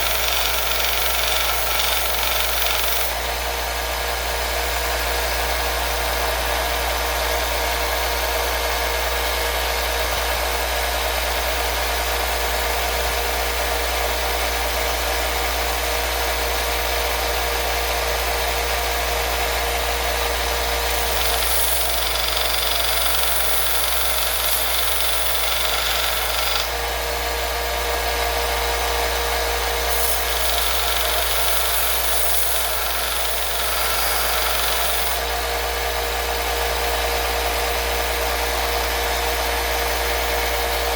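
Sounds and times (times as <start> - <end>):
harsh grinding sound: 0.0 - 3.5, 20.3 - 27.5, 29.0 - 35.5
power tool running: 0.0 - 40.9.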